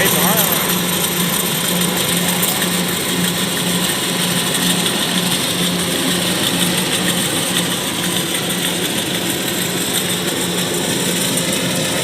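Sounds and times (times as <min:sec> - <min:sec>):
combine harvester running: 0:00.0 - 0:12.0.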